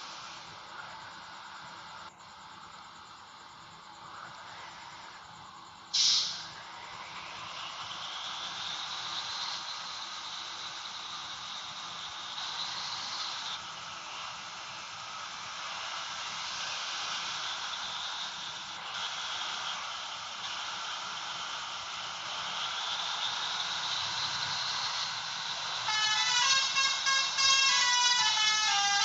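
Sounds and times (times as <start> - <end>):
steady hiss: 0.0 - 29.0
bus air horn melody: 25.8 - 29.0.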